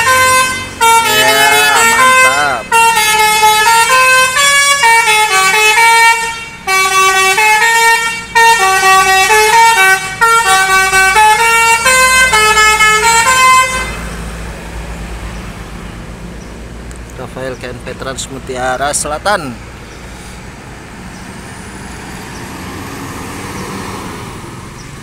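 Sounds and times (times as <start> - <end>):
bus horn melody: 0.0 - 14.1.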